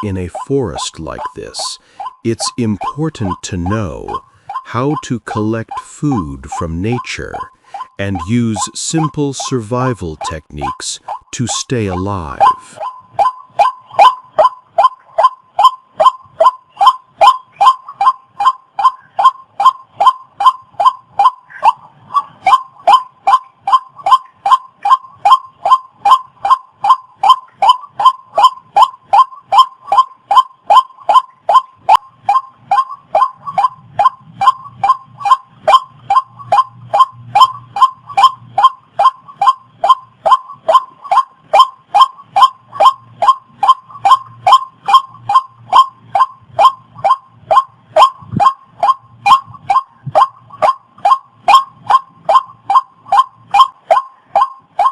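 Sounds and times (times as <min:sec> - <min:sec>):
waterhen calling: 0:00.0 - 0:54.9.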